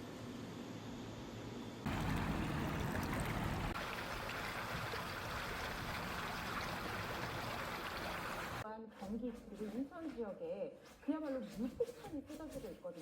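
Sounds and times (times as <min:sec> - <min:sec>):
rushing water hiss: 0:01.9 - 0:08.6.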